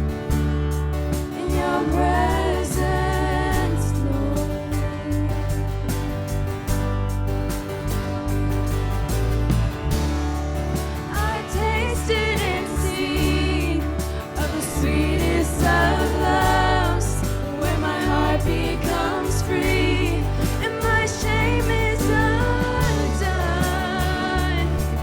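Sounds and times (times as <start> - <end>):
worship band playing: 0.0 - 25.0
person singing: 1.4 - 5.7, 11.2 - 25.0.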